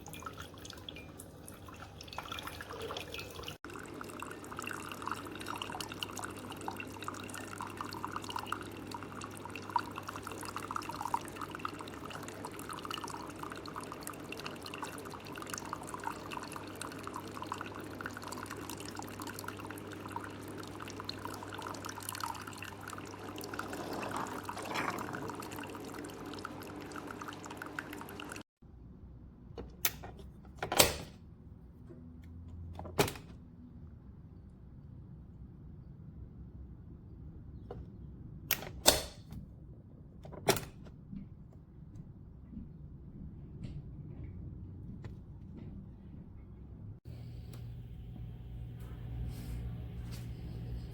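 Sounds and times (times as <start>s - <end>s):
coffee maker humming: 0.0s - 28.4s, 47.1s - 50.9s
water pouring and dripping: 0.0s - 28.4s.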